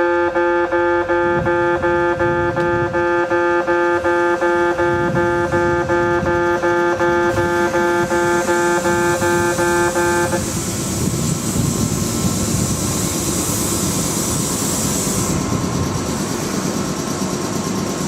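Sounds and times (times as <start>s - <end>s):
level crossing buzzer: 0.0s - 10.4s
train running: 0.0s - 18.0s.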